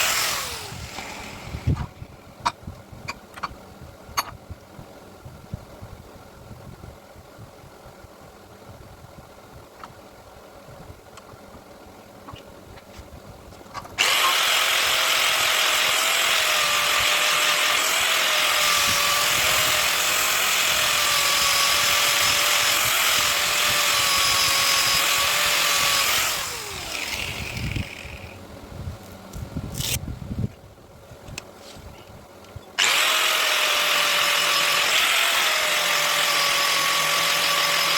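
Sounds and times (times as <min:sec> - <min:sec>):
electric sharpening machine whining: 0:00.0 - 0:01.9, 0:14.0 - 0:28.4, 0:32.8 - 0:37.9.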